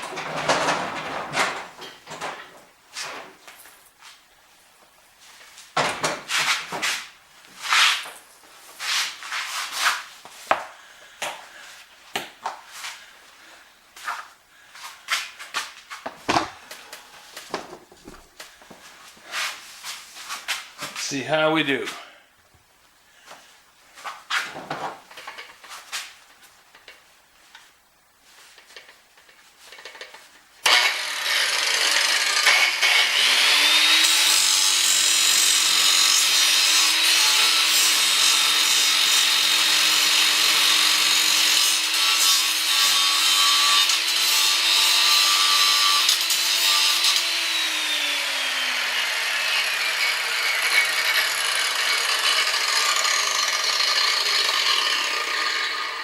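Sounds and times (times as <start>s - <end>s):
grinder motor spinning: 50.1s - 56.0s.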